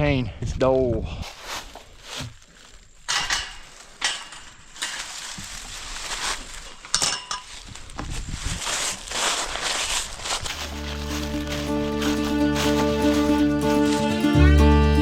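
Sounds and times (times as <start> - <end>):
scraping rustle: 1.4 - 14.0
sharp clinks and knocks: 3.1 - 5.4, 6.7 - 7.7.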